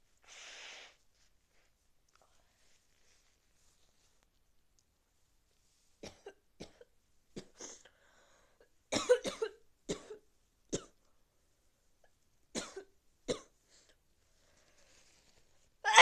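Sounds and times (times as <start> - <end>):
person coughing: 8.9 - 10.2.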